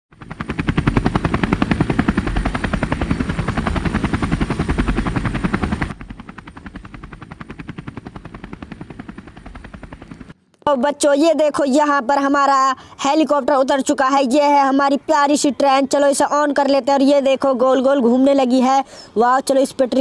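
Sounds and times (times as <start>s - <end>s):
helicopter rotor chopping: 0.1s - 10.4s.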